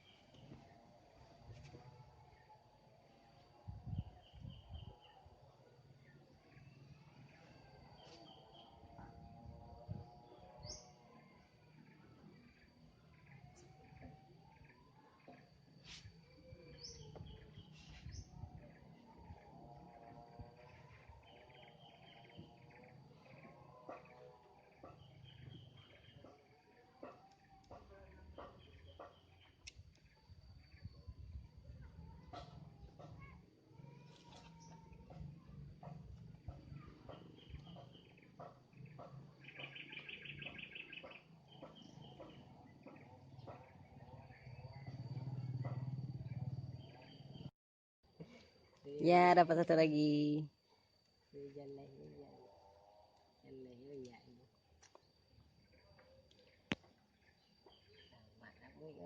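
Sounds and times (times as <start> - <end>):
birds chirping: 34.6 - 47.5.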